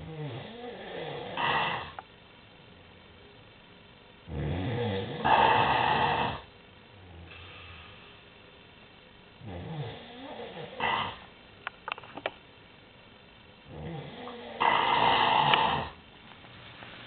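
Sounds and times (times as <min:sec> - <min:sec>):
person snoring: 0:04.3 - 0:06.5, 0:13.7 - 0:16.0.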